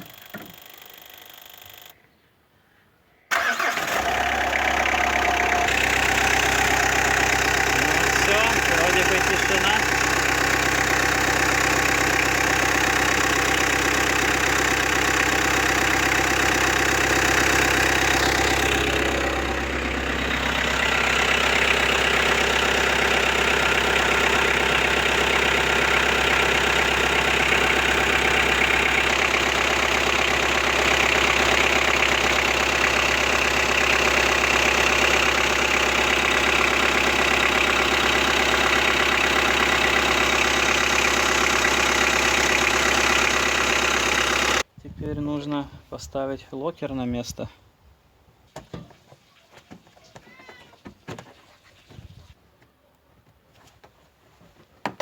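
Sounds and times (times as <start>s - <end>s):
diesel engine idling: 3.3s - 44.7s.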